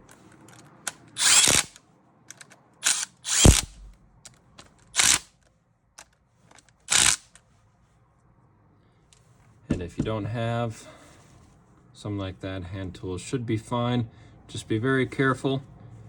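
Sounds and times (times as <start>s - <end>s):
impact wrench bursts: 1.0s - 1.8s, 2.8s - 4.0s, 4.9s - 5.3s, 6.9s - 7.4s.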